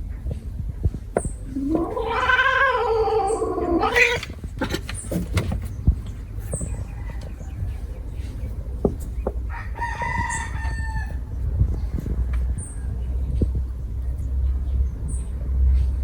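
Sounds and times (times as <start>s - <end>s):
long animal call: 1.6s - 4.2s.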